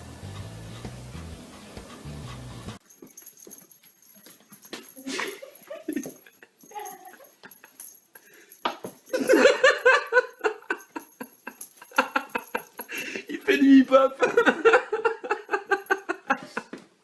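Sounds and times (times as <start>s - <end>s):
people laughing: 5.1s - 6.5s, 9.2s - 16.7s.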